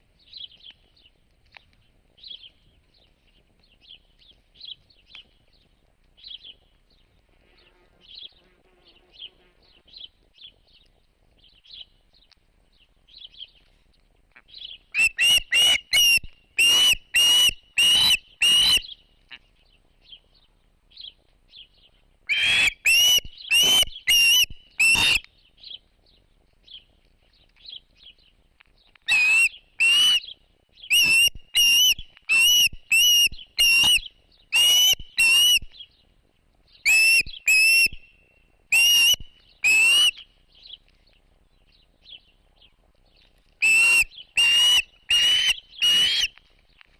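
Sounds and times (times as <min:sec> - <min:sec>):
bird whistling notes: 0:15.0 - 0:19.0, 0:29.1 - 0:35.6, 0:36.9 - 0:40.2, 0:43.6 - 0:46.3.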